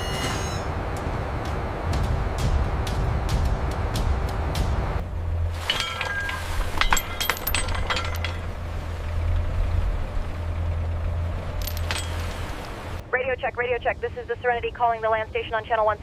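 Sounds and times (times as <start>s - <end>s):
low mechanical hum: 0.0s - 16.0s
light metallic clinks and taps: 11.6s - 12.4s.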